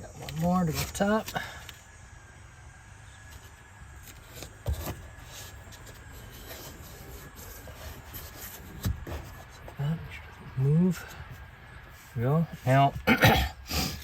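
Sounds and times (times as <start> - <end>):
tape being rubbed down: 4.0 - 9.6.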